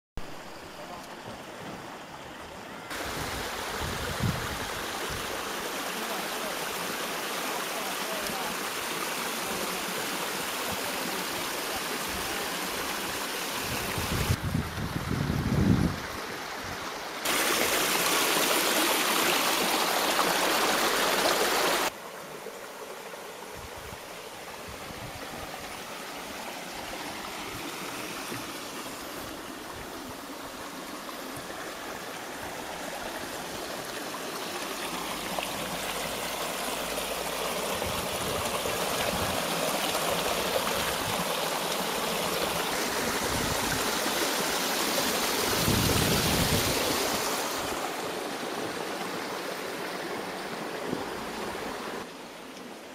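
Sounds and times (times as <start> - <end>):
waterfall splashing into pool: 17.2 - 22.0, 32.8 - 49.9.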